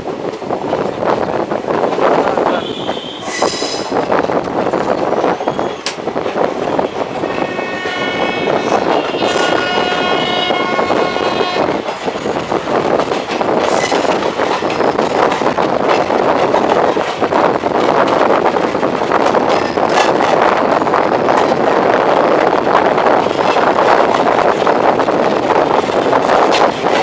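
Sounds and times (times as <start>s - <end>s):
train rumbling on track: 0.0s - 27.0s
train horn: 2.6s - 3.4s, 7.2s - 11.9s.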